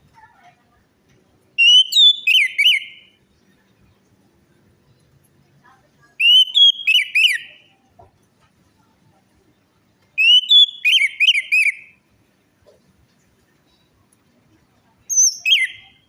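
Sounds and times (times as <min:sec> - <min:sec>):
thrush whistled song: 0:01.6 - 0:03.2, 0:06.2 - 0:07.7, 0:10.2 - 0:12.0, 0:15.1 - 0:16.0.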